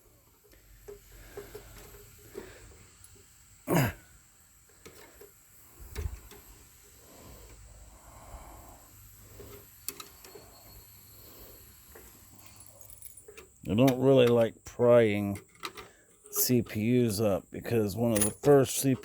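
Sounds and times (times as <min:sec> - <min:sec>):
heavy breathing: 0:07.0 - 0:09.7
handling clicks and knocks: 0:12.5 - 0:14.6, 0:15.2 - 0:16.9, 0:18.0 - 0:19.0.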